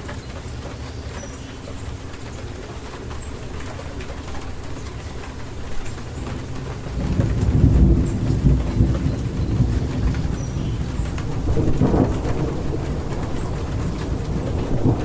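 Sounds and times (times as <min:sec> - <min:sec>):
steady rain falling: 0:00.0 - 0:15.0
thunder rumbling: 0:03.1 - 0:15.0.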